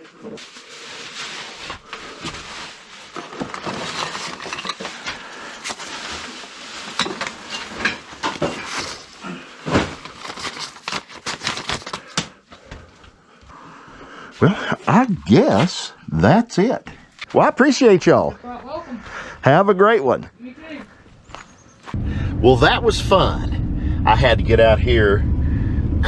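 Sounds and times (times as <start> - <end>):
paper sleeves rustling: 0.4 - 7.0, 8.6 - 12.2.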